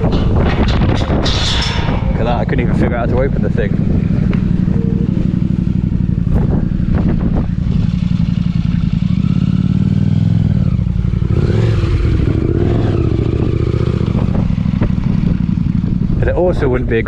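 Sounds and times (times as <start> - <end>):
sharp knocks and clatter: 0.0 - 8.5, 11.0 - 16.1
motorcycle engine idling: 0.0 - 17.0.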